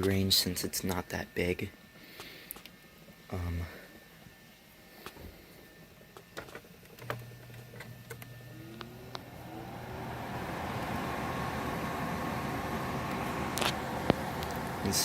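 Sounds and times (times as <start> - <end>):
air conditioner humming: 0.0 - 15.0
air conditioner clicks: 6.1 - 15.0
fan whine and air rush: 7.1 - 15.0.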